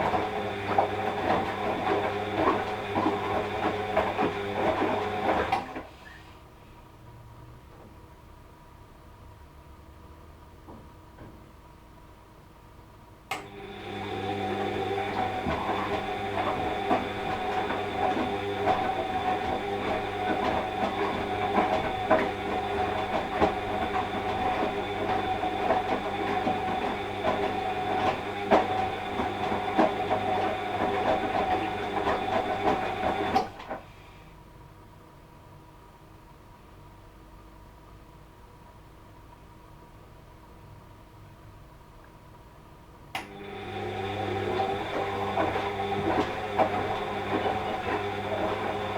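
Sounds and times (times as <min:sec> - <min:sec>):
washing machine motor humming: 0:00.0 - 0:06.0, 0:13.3 - 0:34.0, 0:43.2 - 0:48.9.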